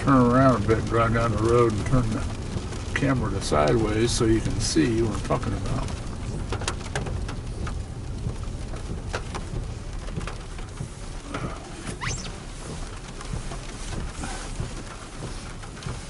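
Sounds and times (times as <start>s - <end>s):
car cabin rumble: 0.0s - 16.0s
rain pattering on a car: 0.0s - 16.0s
short squeak: 11.8s - 12.4s.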